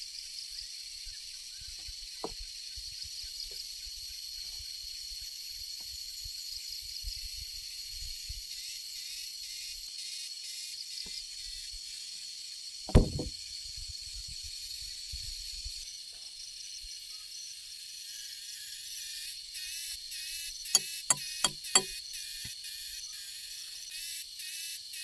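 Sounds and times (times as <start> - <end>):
heavy thud: 12.9 - 13.3
sharp knocks: 12.9 - 13.3, 21.4 - 21.9
insects chirring: 14.6 - 25.0.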